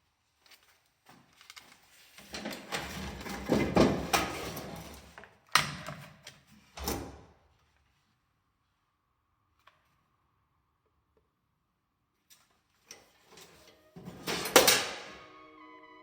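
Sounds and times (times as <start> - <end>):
rustling and rattling small parts: 0.3 - 6.5.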